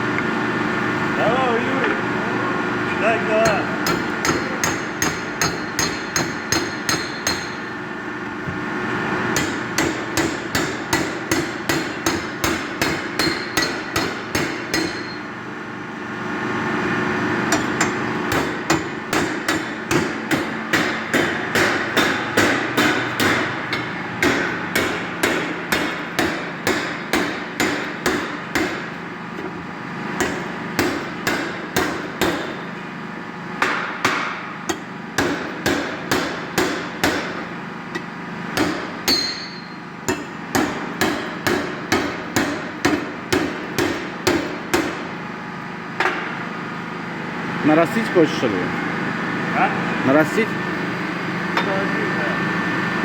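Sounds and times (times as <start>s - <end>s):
hammer striking metal: 3.4s - 7.8s, 9.4s - 15.3s, 17.5s - 28.9s, 30.2s - 32.6s, 33.6s - 45.1s.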